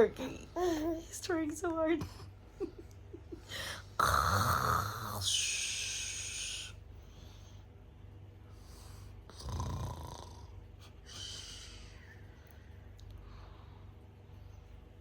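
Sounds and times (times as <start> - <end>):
low snore: 4.0 - 5.2, 9.3 - 10.6.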